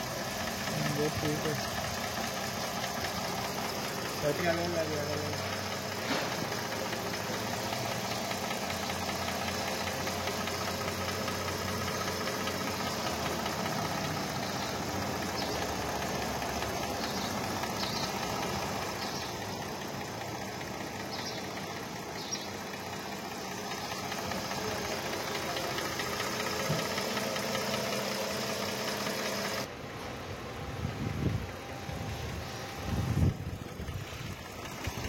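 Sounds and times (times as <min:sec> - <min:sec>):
car engine idling with misfire: 0:00.0 - 0:35.0.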